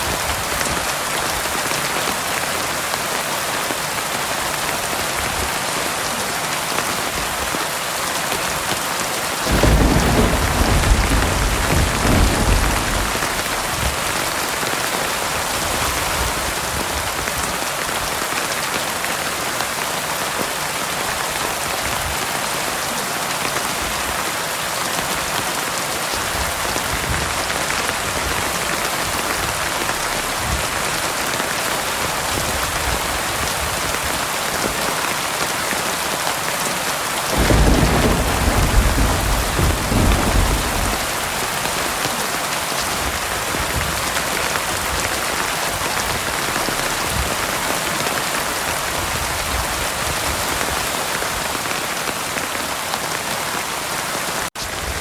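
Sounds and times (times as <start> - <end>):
heavy rain pouring: 0.0 - 55.0
thunder rumbling: 9.4 - 14.7, 37.3 - 42.0.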